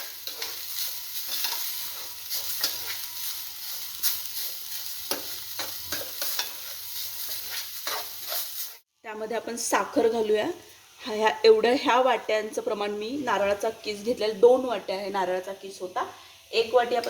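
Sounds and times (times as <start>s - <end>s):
utensil scraping a pan: 0.0s - 8.8s
coconut sizzling in ghee: 0.0s - 17.0s.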